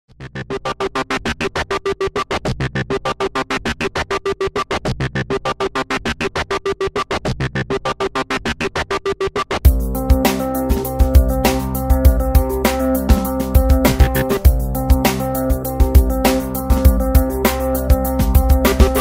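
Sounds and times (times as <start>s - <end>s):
pulsing synth music: 9.7s - 19.0s.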